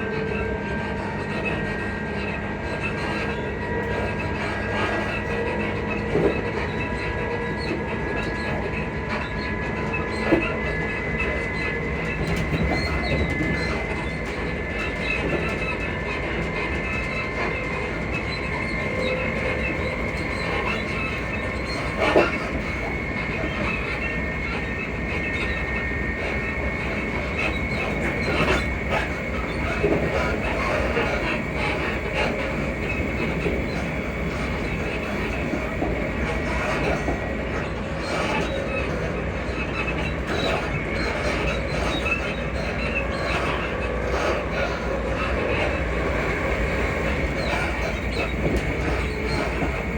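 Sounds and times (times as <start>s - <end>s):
train rumble: 0.0s - 49.9s
suspension knocks and squeaks: 0.1s - 49.9s
rail clatter: 0.2s - 49.9s.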